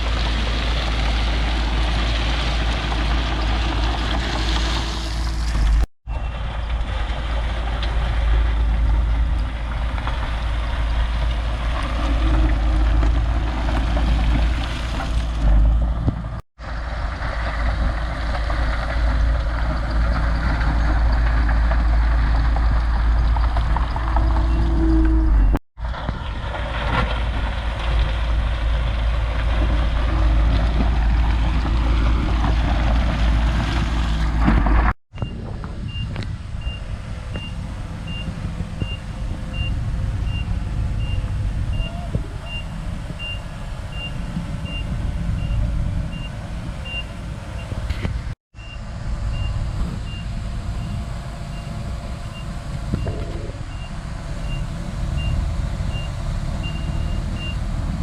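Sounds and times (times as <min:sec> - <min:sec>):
heavy diesel engine running: 0:00.0 - 0:58.0
reversing alarm beeping: 0:35.2 - 0:47.8, 0:48.6 - 0:57.7.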